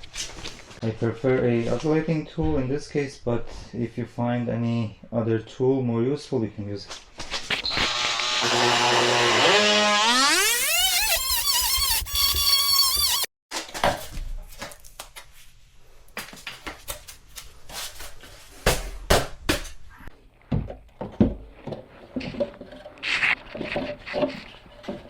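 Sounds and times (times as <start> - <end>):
multi-tool cutting plank: 7.6 - 13.3.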